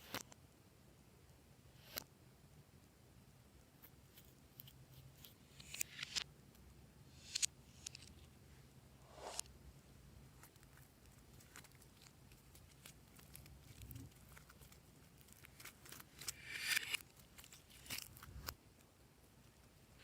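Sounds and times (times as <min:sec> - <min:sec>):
crinkling rustle: 0:10.3 - 0:20.0
slime clicks and crackles: 0:10.4 - 0:18.6.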